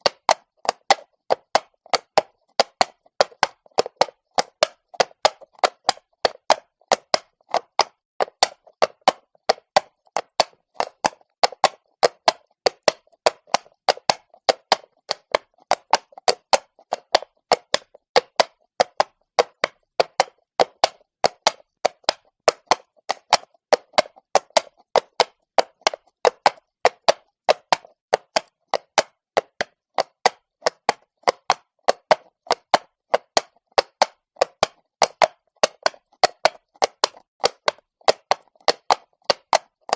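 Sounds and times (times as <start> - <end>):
horse hooves on cobblestones: 0.0 - 39.9.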